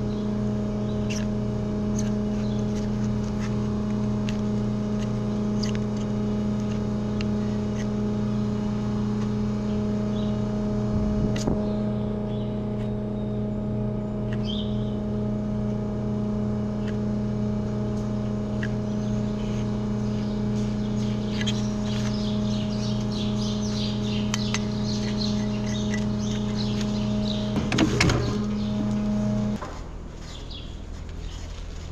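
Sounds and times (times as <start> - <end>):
machine humming: 0.0 - 31.9
sharp knocks: 27.5 - 28.8.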